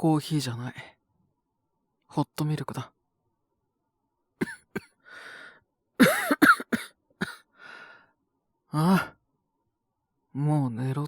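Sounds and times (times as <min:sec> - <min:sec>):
man coughing: 0:04.4 - 0:05.0, 0:06.0 - 0:07.4.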